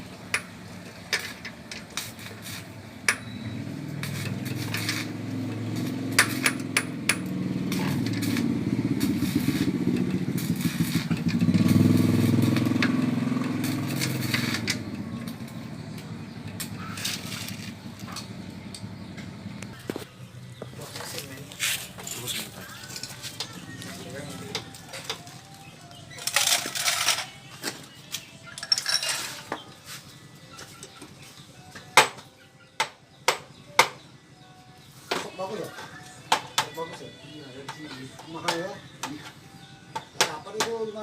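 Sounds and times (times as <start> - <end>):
motorcycle engine running: 2.6 - 25.0.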